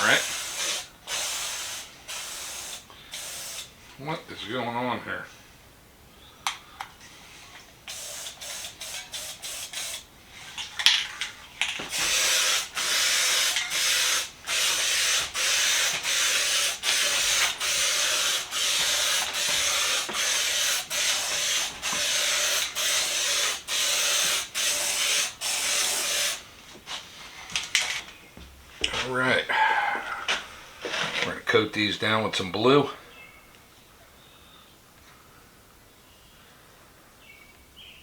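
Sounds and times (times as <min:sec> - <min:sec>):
paint sprayer hissing bursts: 0:00.0 - 0:03.8, 0:07.3 - 0:10.5, 0:11.1 - 0:26.5.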